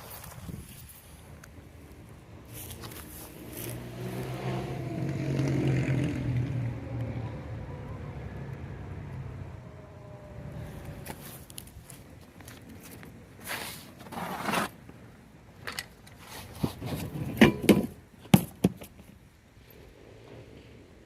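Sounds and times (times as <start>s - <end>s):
metal clanks and knocks: 17.1s - 18.8s.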